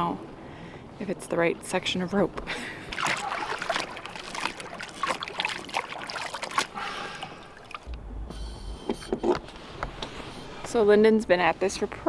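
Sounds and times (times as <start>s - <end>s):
water splashing and trickling: 2.5s - 8.0s
muffled low rumble: 7.8s - 10.8s.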